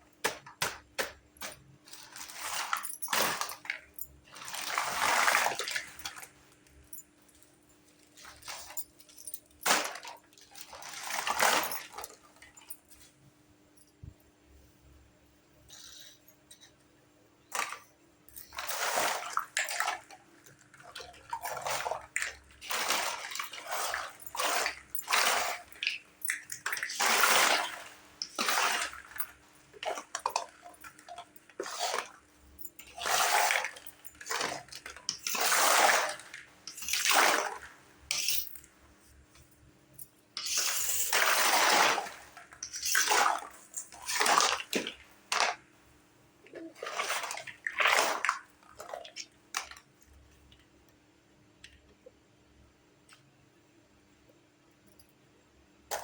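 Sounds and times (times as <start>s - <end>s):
water pouring and splashing: 18.5s - 32.2s, 46.6s - 49.8s.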